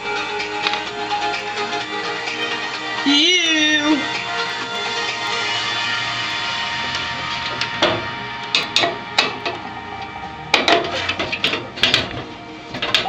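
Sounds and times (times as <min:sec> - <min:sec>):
background music: 0:00.0 - 0:13.0
metal parts clicking and clattering: 0:10.6 - 0:13.0.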